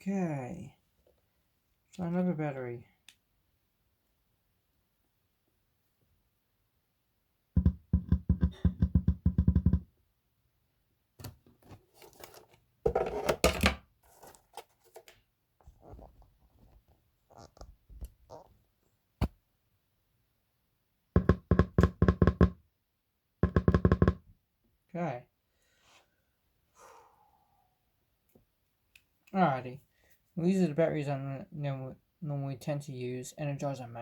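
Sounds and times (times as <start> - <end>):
handling and rustling: 11.2 - 18.5.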